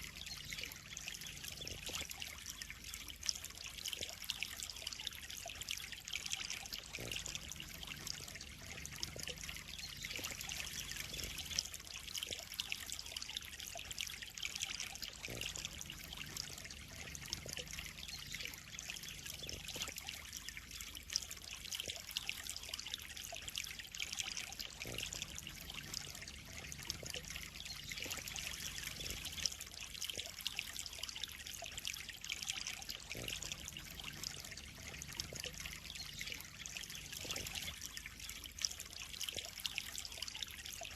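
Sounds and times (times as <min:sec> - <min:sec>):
water trickling into pond: 0:00.0 - 0:40.9.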